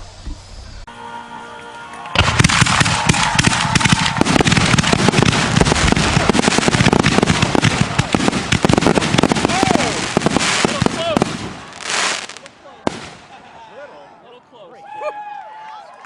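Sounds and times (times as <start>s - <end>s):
firework whistling: 2.1s - 13.4s
fireworks bangs and crackling: 2.1s - 13.5s.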